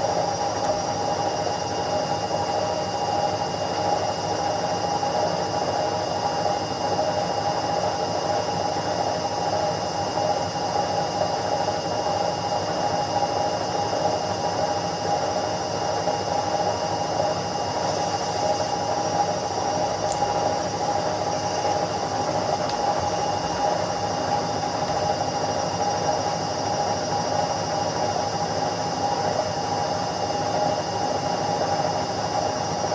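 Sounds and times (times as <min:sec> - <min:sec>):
washing machine humming: 0:00.0 - 0:03.2, 0:13.9 - 0:32.9.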